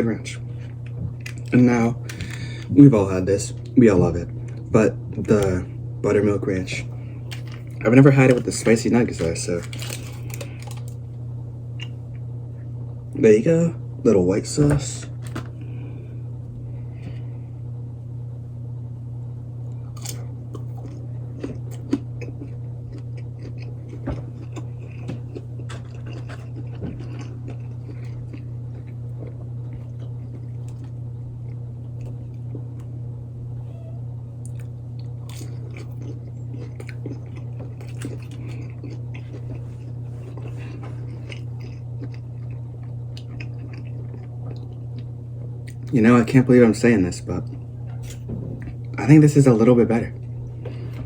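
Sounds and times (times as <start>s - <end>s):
steady low hum: 0.0s - 51.0s
person chewing crunchy food: 6.7s - 11.0s, 19.8s - 33.0s, 34.4s - 46.0s, 47.4s - 49.0s.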